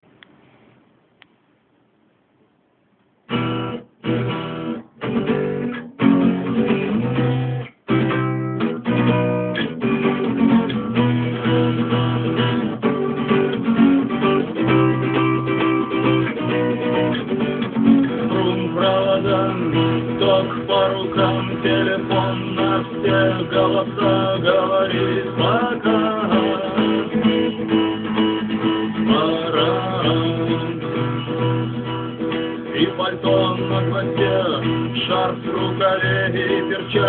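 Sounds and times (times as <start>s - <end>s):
acoustic guitar strumming: 3.3s - 37.0s.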